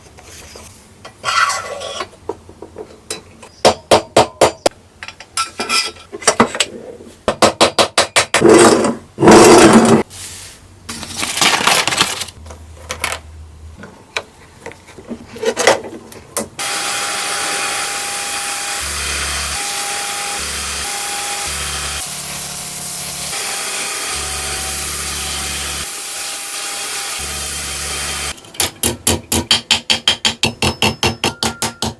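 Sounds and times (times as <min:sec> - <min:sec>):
tool scraping metal: 0:00.5 - 0:02.2
tools tapping on metal: 0:28.5 - 0:31.9.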